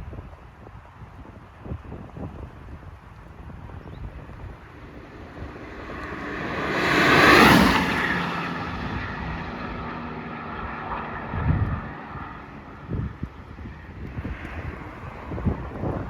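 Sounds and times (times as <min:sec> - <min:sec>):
wind rumbling on microphone: 0:00.0 - 0:16.0
car driving past: 0:04.1 - 0:16.0.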